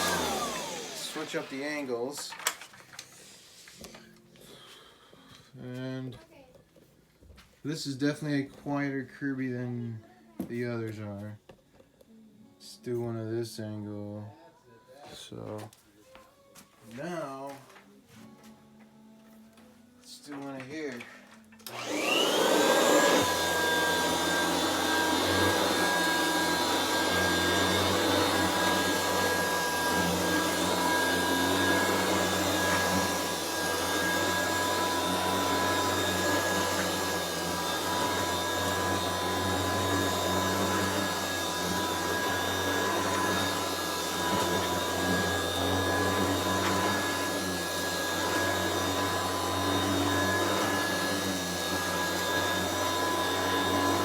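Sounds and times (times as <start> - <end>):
vacuum cleaner motor whining: 0.0 - 3.1, 21.6 - 54.0.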